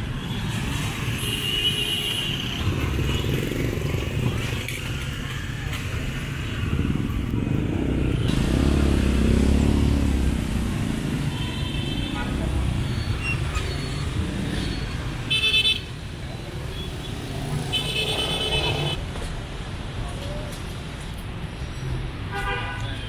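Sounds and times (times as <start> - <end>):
motor vehicle engines running: 2.4 - 15.3.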